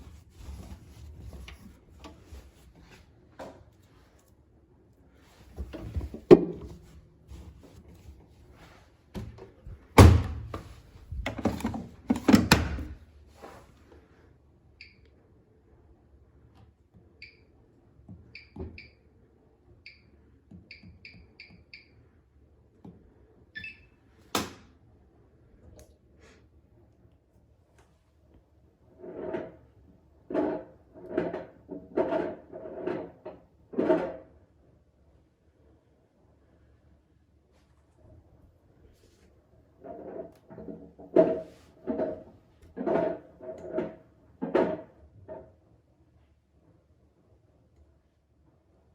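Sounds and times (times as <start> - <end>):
washing machine thuds and knocks: 9.2 - 13.0.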